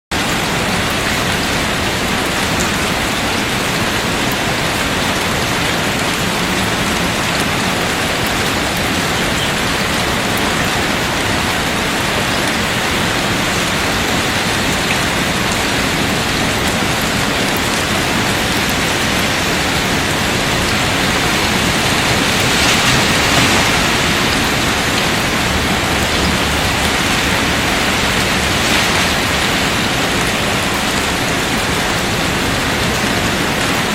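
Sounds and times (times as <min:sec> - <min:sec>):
heavy rain falling: 0:00.1 - 0:33.9.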